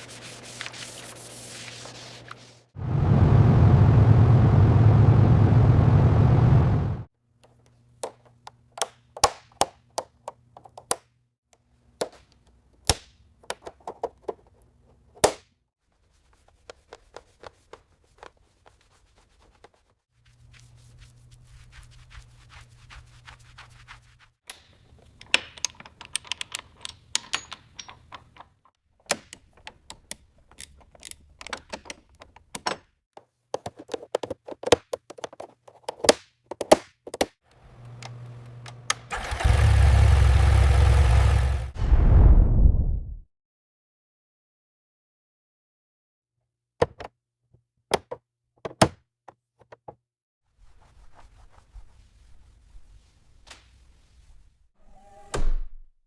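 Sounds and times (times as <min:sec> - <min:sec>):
low hum: 0:02.8 - 0:07.1
hand tools clicking and knocking: 0:24.5 - 0:32.9.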